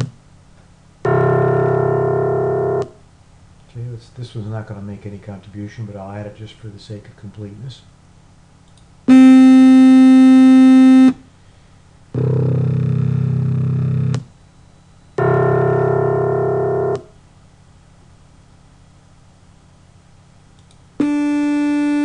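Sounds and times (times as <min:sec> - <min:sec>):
low synthesized piano-like tones: 0:01.0 - 0:03.0, 0:15.2 - 0:17.2.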